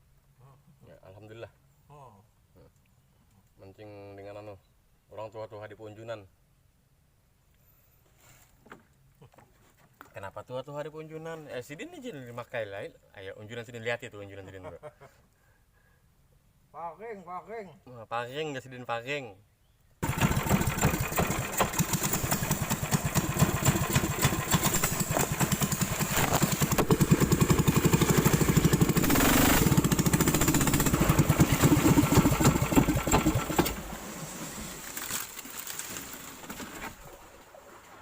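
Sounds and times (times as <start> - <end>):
small engine running: 20.0 - 33.8.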